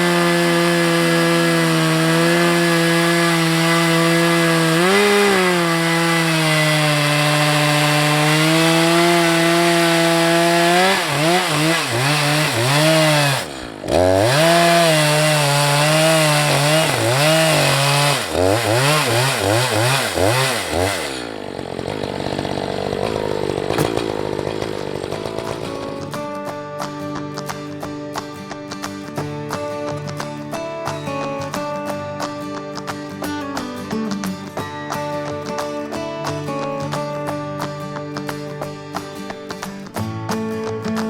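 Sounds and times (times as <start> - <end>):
chainsaw ripping a log: 0.0 - 26.4.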